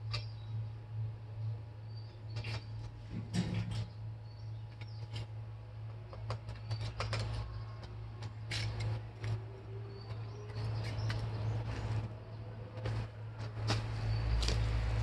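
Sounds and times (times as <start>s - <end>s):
steady low hum: 0.0s - 15.0s
faint bird-like chirps: 1.4s - 2.7s.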